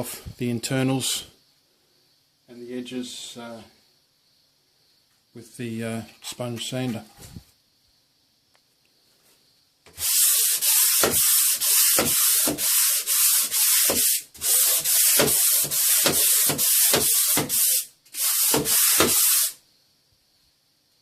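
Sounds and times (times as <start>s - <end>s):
hand sanding plaster: 9.9s - 19.6s.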